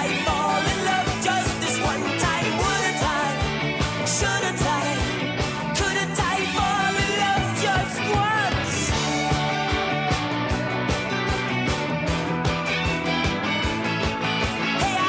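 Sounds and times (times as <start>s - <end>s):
person singing: 0.0s - 10.1s
rock band music: 0.0s - 15.0s.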